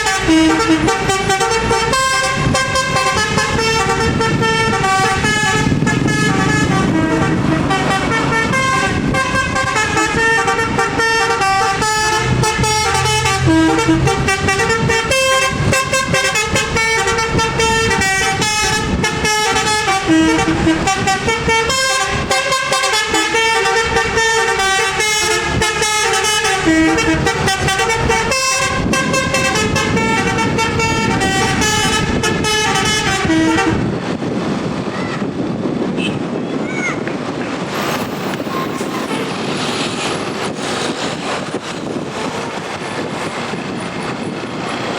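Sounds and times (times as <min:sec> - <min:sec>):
bus multi-tone air horn melody: 0:00.0 - 0:34.1, 0:35.9 - 0:36.5, 0:41.9 - 0:42.8.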